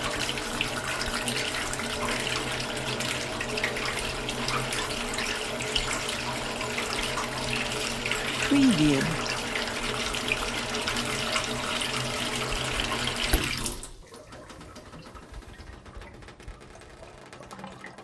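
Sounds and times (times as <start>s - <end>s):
bathtub faucet running: 0.0s - 18.0s
water draining from tub: 0.0s - 18.0s
faucet shut-off knock: 13.2s - 13.8s.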